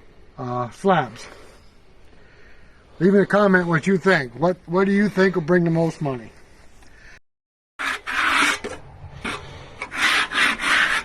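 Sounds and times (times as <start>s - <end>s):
rasping brushing strokes on wood: 7.8s - 11.0s.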